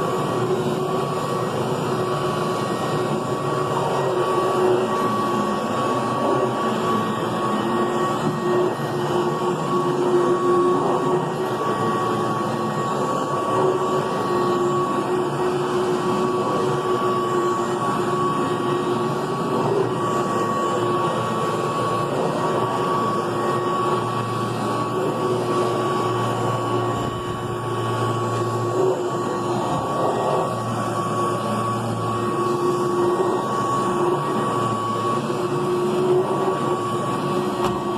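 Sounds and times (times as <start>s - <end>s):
vacuum cleaner motor whine: 0.0s - 37.9s.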